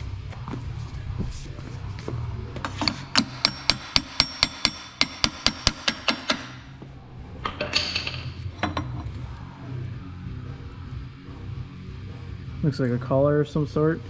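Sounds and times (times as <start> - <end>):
hammer striking metal: 2.6 - 6.7.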